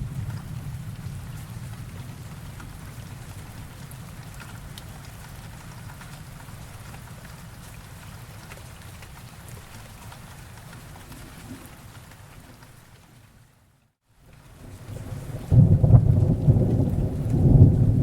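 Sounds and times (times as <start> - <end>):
thunder rumbling: 0.0 - 5.6, 14.7 - 18.0
raindrops ticking: 0.0 - 13.0, 14.2 - 18.0
steady rain: 0.0 - 18.0.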